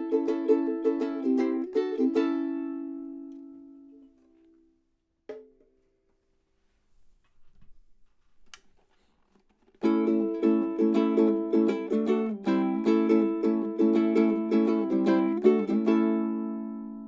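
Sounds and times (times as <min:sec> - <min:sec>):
ukulele chord ringing: 0:00.0 - 0:04.1, 0:09.8 - 0:17.0
ukulele strummed chords: 0:00.0 - 0:04.2, 0:09.8 - 0:17.0.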